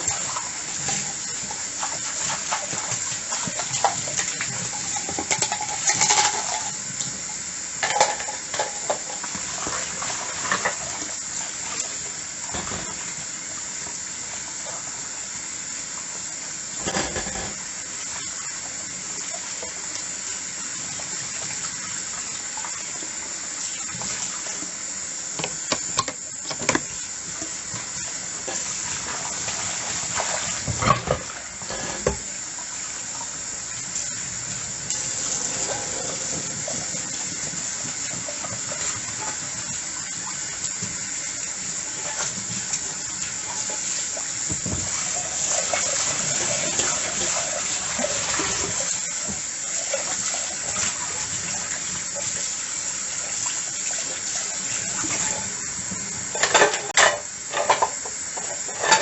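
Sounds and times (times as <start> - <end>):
dishes knocking and clinking: 16.8 - 17.6, 25.4 - 27.0, 30.6 - 32.2
tap running into sink: 25.3 - 28.7, 30.5 - 32.3, 44.2 - 45.0.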